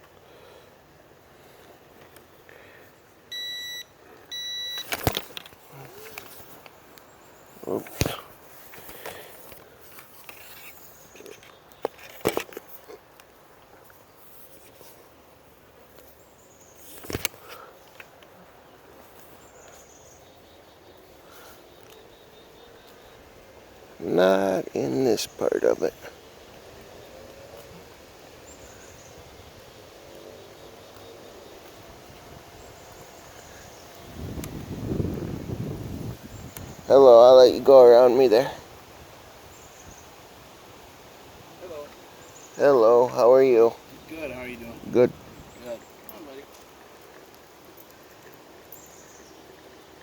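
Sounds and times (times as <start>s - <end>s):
distant bird calls: 0.0s - 50.0s
faint outdoor background noise: 0.0s - 50.0s
low rustle: 0.3s - 24.0s.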